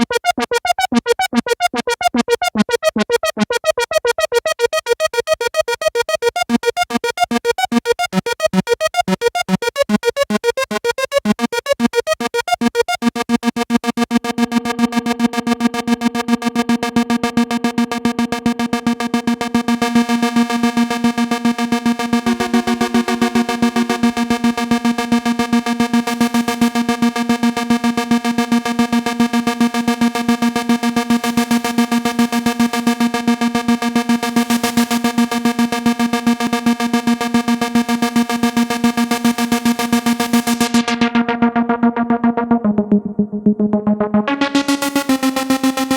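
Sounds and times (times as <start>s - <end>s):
analog synthesizer pulsing notes: 0.0s - 45.9s
high wavering synth note: 22.0s - 26.7s.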